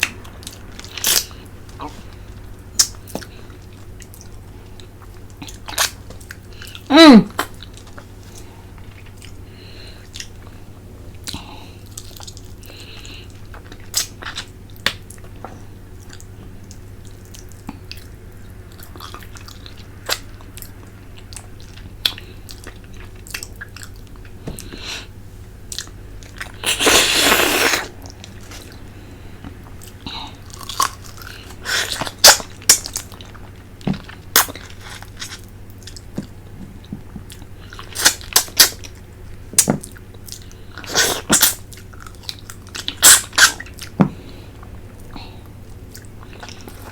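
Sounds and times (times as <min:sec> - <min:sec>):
wet chewing: 0:25.7 - 0:39.0
slurping: 0:26.4 - 0:28.8
sucking at bones: 0:26.5 - 0:28.8.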